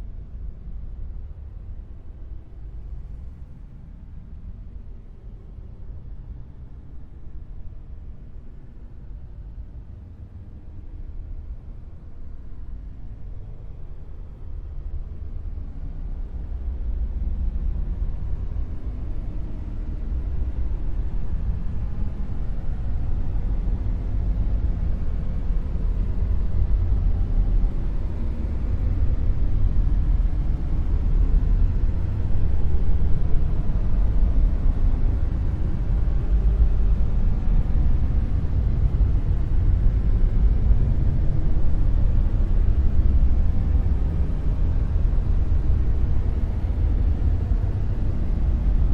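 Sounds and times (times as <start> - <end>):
deep steady rumble noise: 0.0 - 48.9.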